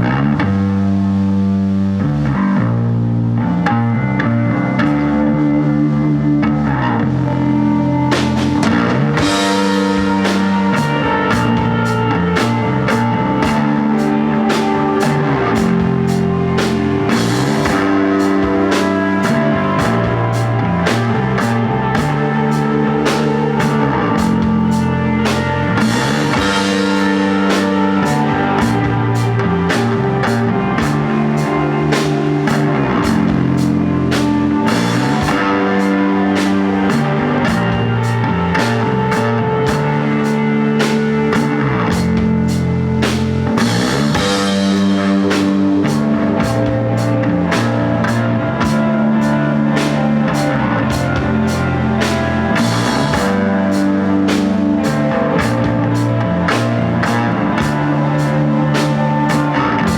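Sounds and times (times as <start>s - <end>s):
bass guitar: 0.0s - 59.9s
electric guitar: 0.0s - 59.9s
drum kit beat: 8.1s - 59.9s.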